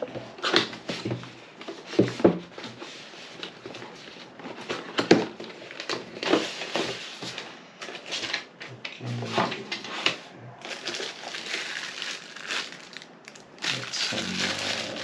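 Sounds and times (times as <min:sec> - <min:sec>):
packaging rustling: 0:02.6 - 0:08.5, 0:10.1 - 0:15.0.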